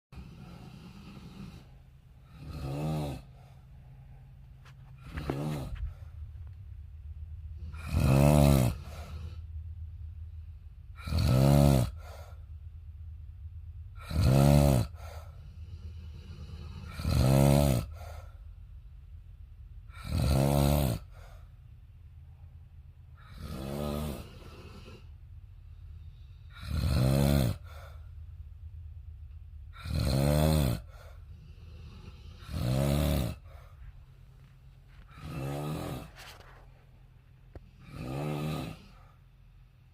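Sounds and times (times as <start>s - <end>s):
snoring: 0.2s - 3.6s, 5.0s - 6.1s, 7.6s - 9.5s, 10.9s - 12.4s, 14.0s - 18.4s, 19.9s - 21.5s, 23.2s - 25.2s, 25.9s - 28.0s, 29.7s - 33.9s, 34.9s - 36.7s, 37.5s - 39.2s.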